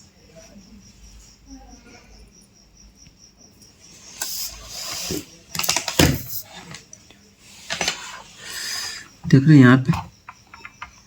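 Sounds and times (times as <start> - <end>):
tools rustling and clattering: 4.2 - 6.9, 7.6 - 8.2.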